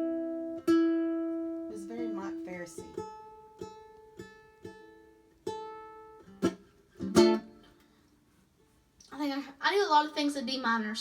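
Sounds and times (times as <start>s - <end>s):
plucked string instrument notes: 0.0s - 8.0s.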